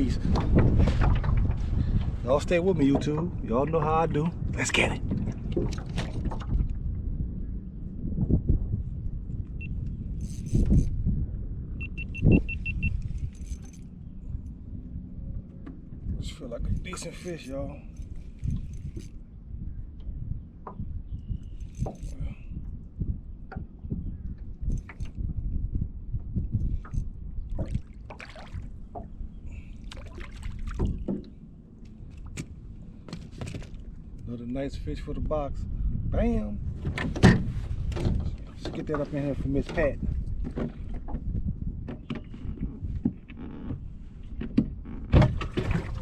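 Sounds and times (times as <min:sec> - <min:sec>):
wind rumbling on microphone: 0:00.0 - 0:46.0
water splashes: 0:27.6 - 0:28.7, 0:29.7 - 0:31.4, 0:45.3 - 0:46.0
knocks on boat: 0:44.4 - 0:46.0.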